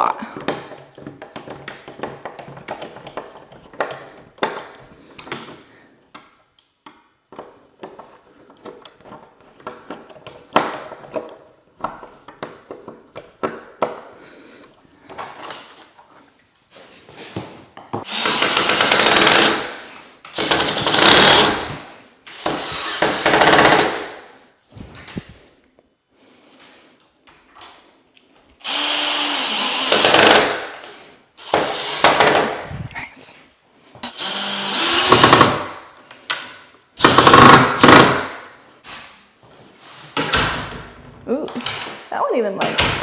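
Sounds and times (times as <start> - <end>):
power drill driving screws: 18.0 - 24.2, 28.6 - 32.6, 34.0 - 35.8, 37.0 - 38.4.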